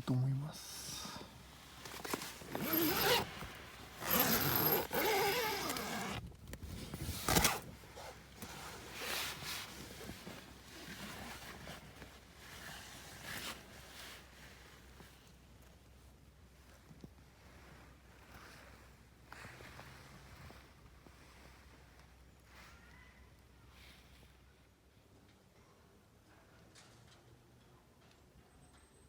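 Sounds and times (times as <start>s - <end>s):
fabric rustling: 1.1s - 15.6s
zipper being pulled: 1.8s - 6.3s, 6.9s - 13.7s.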